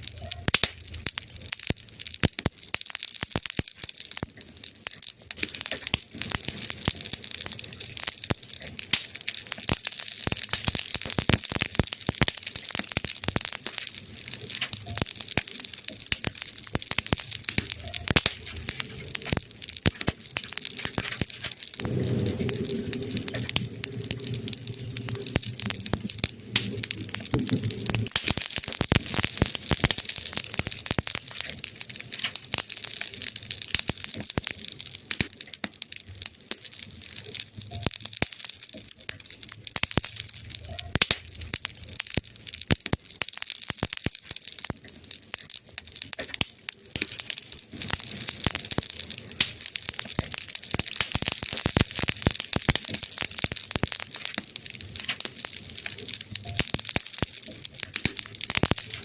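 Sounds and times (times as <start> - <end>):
campfire crackling and popping: 0.0 - 59.0
low hum: 21.1 - 28.2.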